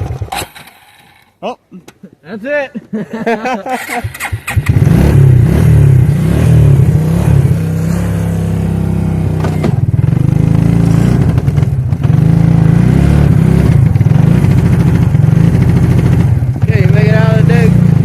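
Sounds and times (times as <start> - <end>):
atv engine revving: 0.0 - 1.3, 3.4 - 18.0.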